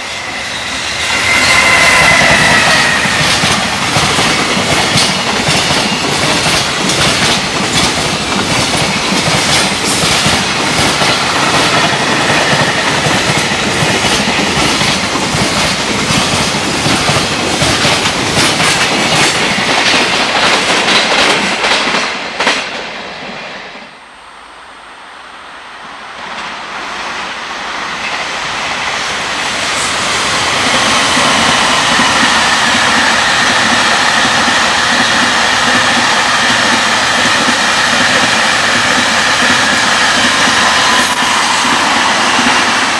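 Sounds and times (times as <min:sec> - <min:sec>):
freight train roar: 0:00.0 - 0:42.9
train wheels clattering over rail joints: 0:01.3 - 0:23.0.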